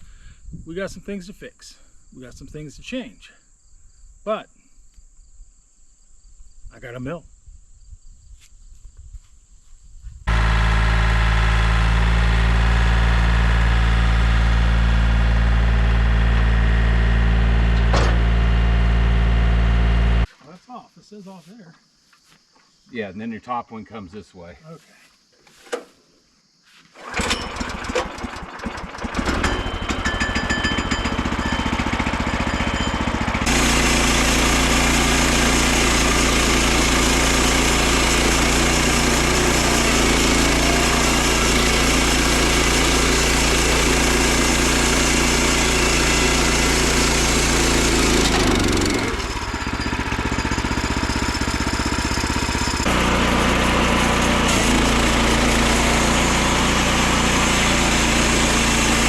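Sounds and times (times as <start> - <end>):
small gasoline engine running: 10.3 - 20.3, 27.0 - 59.0.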